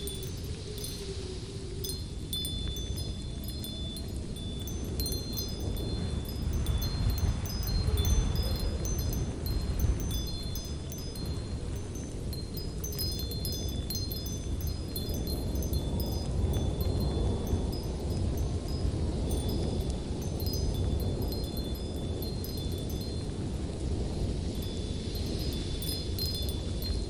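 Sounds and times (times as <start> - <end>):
gusting wind: 0.0 - 27.0
wind chimes tinkling: 0.0 - 27.0.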